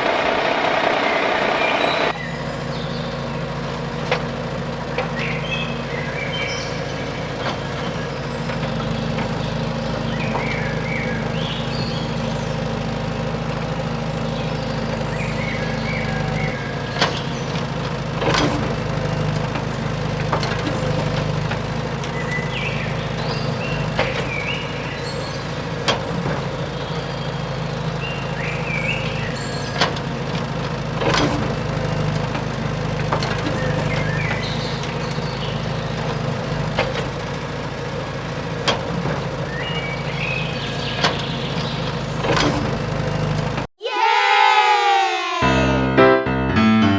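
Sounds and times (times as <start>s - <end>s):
machine motor droning: 0.0s - 43.7s
faint chirps: 5.0s - 12.8s, 14.2s - 17.6s.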